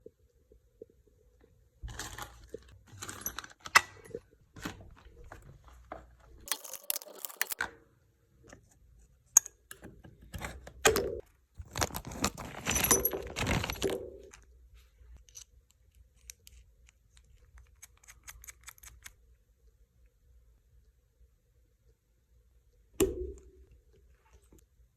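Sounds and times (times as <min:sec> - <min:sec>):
small metal parts clicking and rattling: 0:01.9 - 0:04.2, 0:06.4 - 0:07.6, 0:11.7 - 0:14.4.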